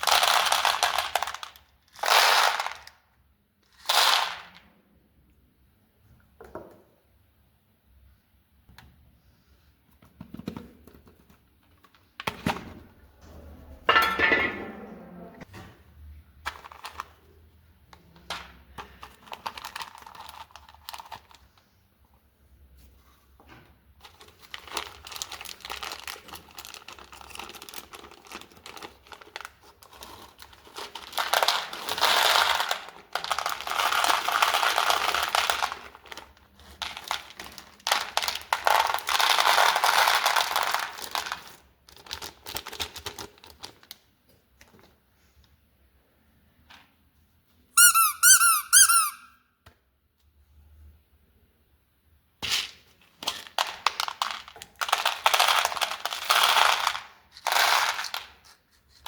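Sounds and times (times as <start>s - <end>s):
plastic packaging crinkling: 0.0s - 3.0s, 18.9s - 21.6s, 24.0s - 44.0s.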